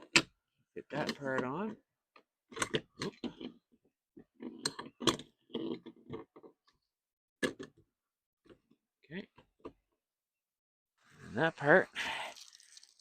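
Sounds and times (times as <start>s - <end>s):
door lock parts clicking and knocking: 0.0s - 3.6s, 4.2s - 6.8s, 7.4s - 8.8s.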